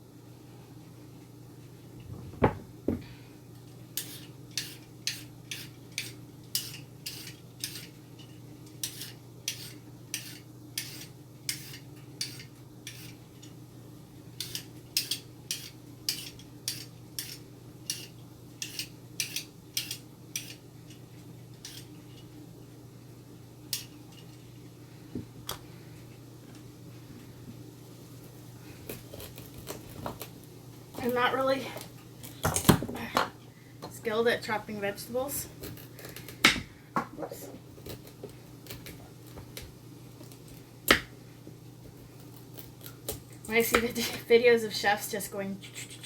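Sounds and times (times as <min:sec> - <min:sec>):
peeler scraping carrot: 0:04.0 - 0:08.0, 0:08.8 - 0:13.2.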